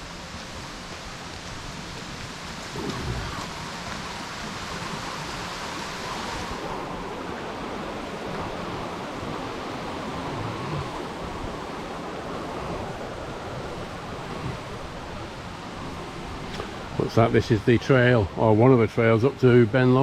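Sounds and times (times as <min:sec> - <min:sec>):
water rushing: 0:00.0 - 0:20.0
wind rushing: 0:02.5 - 0:17.1.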